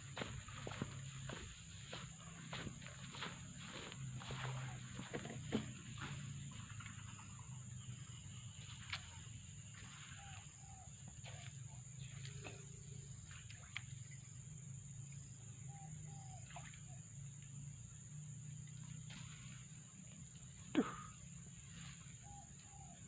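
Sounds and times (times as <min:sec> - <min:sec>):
faint bird calls: 0:00.2 - 0:14.2.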